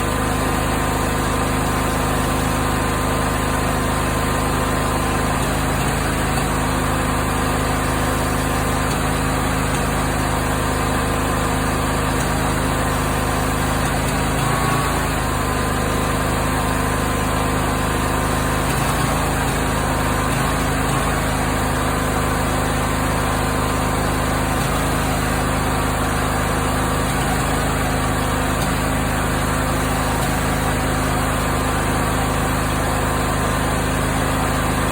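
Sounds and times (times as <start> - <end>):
engine running: 0.0 - 34.9.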